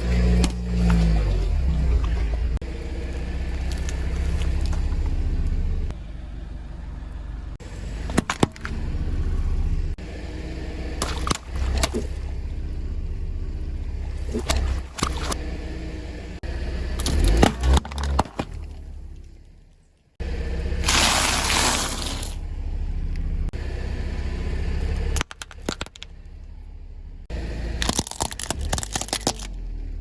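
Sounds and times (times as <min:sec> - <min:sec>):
car engine and tyres rumbling: 0:00.0 - 0:30.0
wheels crushing objects: 0:20.7 - 0:22.4.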